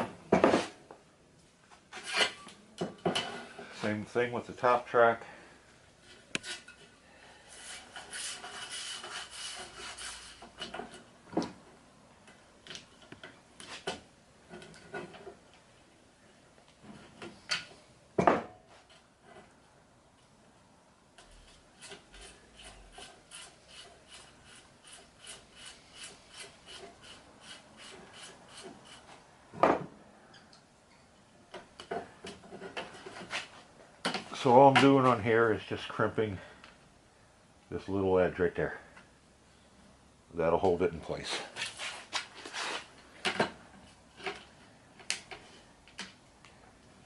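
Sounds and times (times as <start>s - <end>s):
brush strip rasping in track: 7.6s - 10.5s, 21.8s - 29.2s.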